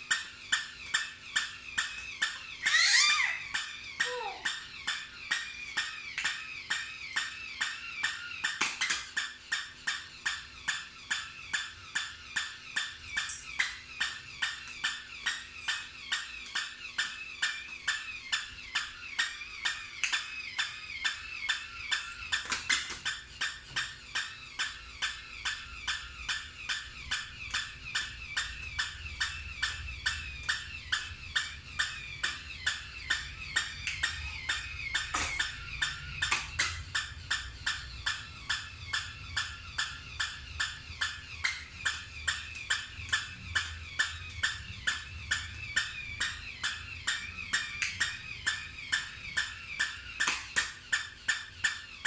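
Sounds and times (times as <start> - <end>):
toy dog electronic yaps: 0.1 - 27.7
wavering high tone: 0.5 - 8.5, 10.0 - 52.0.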